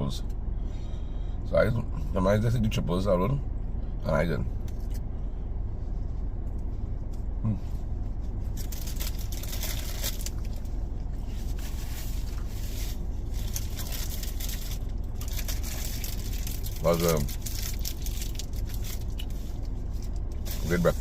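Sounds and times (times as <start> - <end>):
car running hum: 0.0 - 21.0
rustling handling noises: 7.8 - 21.0.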